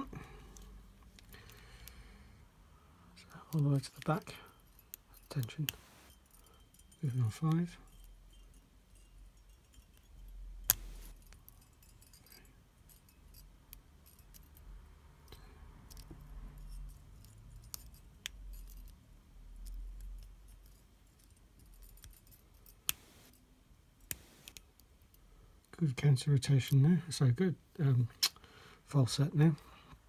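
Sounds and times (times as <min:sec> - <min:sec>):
lock pick clicking and scraping: 0:03.4 - 0:06.9, 0:09.0 - 0:14.7, 0:15.8 - 0:19.0, 0:19.6 - 0:23.4.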